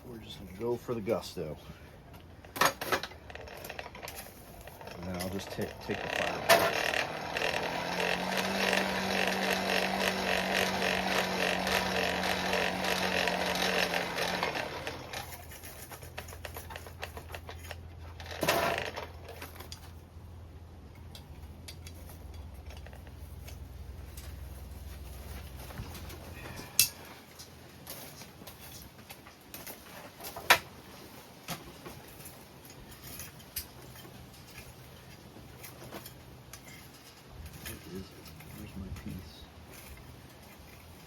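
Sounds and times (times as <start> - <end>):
electric air blower running: 4.8 - 15.4.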